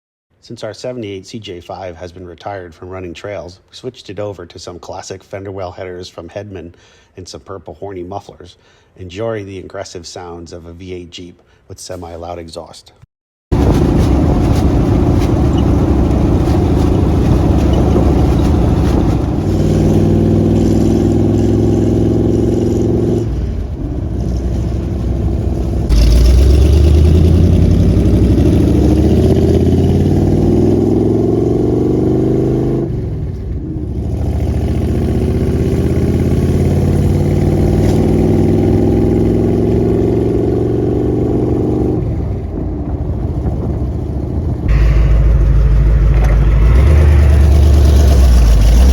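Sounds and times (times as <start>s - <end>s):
loud engine exhaust revving: 13.5s - 48.9s.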